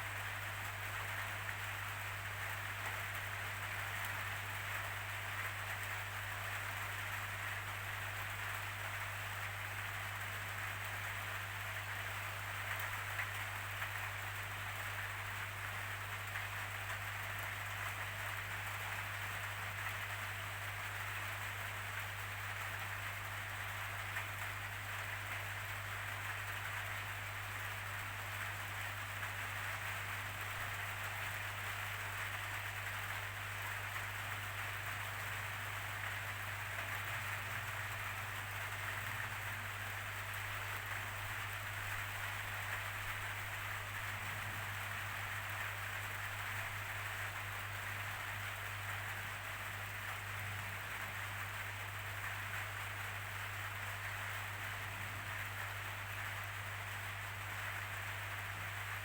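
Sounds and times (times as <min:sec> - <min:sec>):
steady rainfall: 0:00.0 - 0:59.0.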